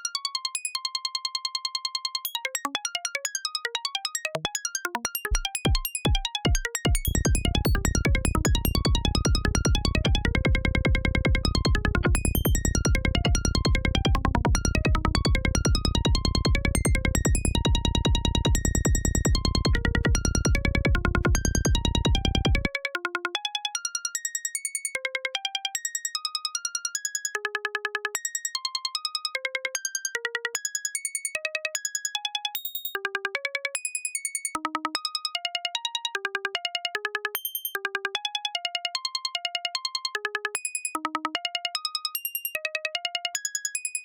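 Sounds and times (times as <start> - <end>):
low synth bass: 7.1 - 22.7.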